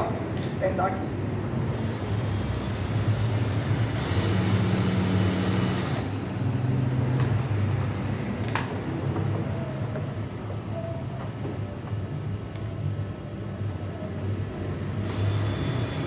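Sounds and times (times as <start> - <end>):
power screwdriver whirring: 1.7 - 6.1, 15.0 - 16.0.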